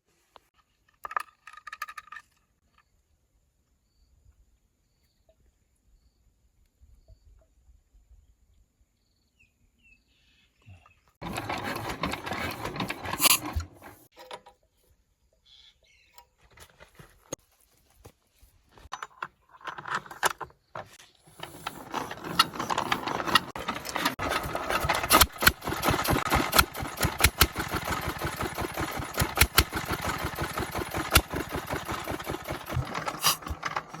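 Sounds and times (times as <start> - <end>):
diesel engine knocking: 24.2 - 33.0.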